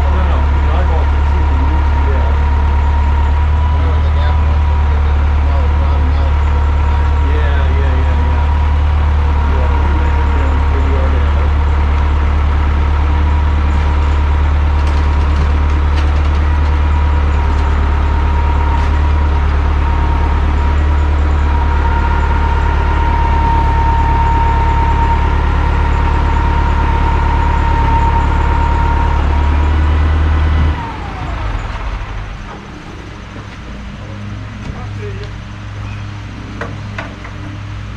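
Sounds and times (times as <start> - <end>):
large engine running with whine: 0.0 - 37.9.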